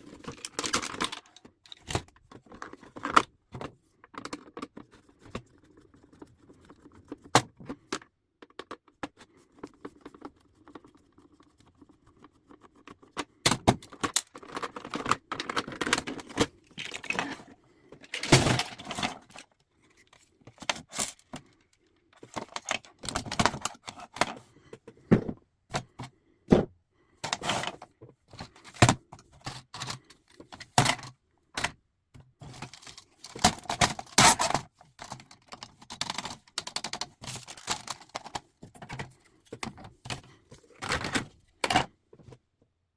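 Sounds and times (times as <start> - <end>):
typewriter parts clicking and clattering: 32.5 - 38.5.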